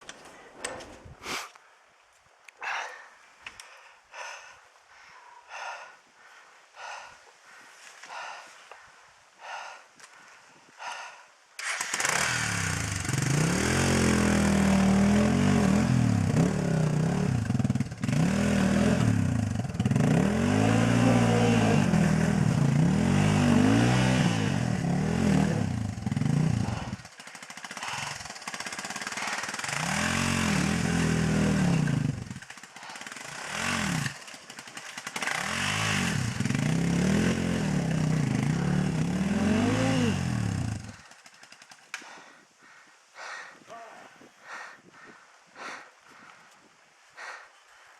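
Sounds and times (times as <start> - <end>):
motorcycle engine revving: 11.6 - 41.8.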